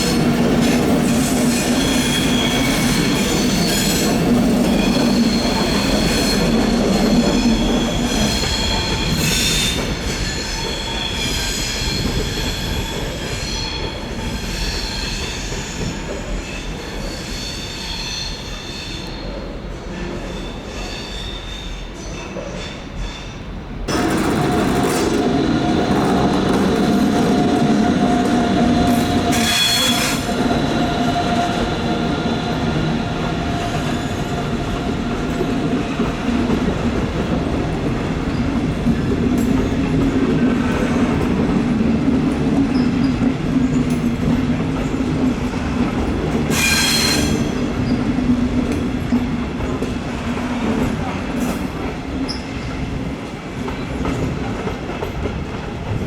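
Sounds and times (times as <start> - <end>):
train wheels rumbling: 0.0 - 20.9, 21.7 - 56.0
high-pitched wheel squeals: 23.9 - 34.6, 46.5 - 48.0.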